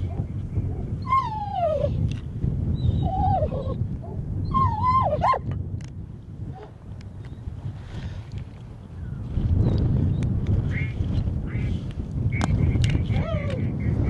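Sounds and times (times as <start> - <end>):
wind rumble on microphone: 0.0 - 14.0
dog whining: 1.0 - 2.0, 2.8 - 3.8, 4.5 - 5.4.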